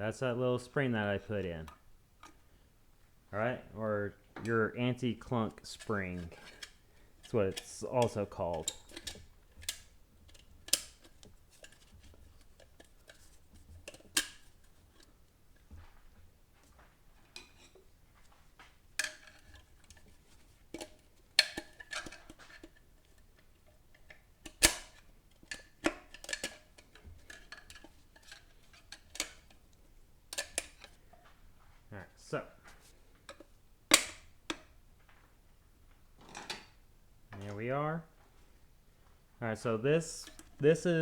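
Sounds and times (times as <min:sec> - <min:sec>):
metal tools clicking and clinking: 0:05.2 - 0:14.5, 0:19.0 - 0:22.8, 0:23.9 - 0:29.6, 0:30.3 - 0:31.0.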